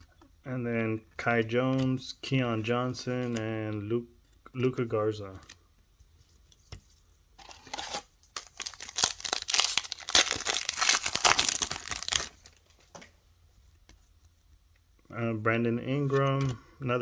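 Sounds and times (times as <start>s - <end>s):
plastic wrapper tearing and crinkling: 7.4s - 12.6s.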